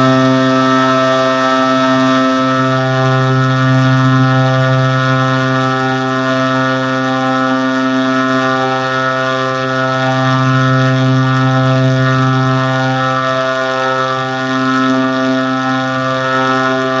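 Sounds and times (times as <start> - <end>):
buzzy low tone: 0.0 - 17.0.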